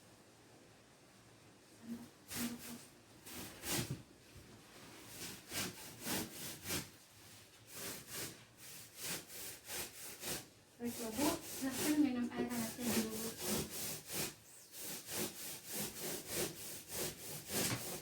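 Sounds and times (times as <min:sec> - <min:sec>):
short rubbing strokes: 0:07.7 - 0:18.0.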